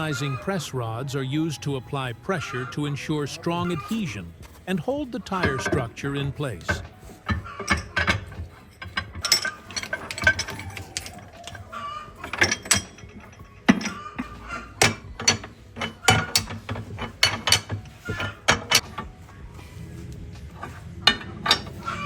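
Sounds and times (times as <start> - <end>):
metal clanks of press rods: 5.2 - 19.2, 20.5 - 22.0.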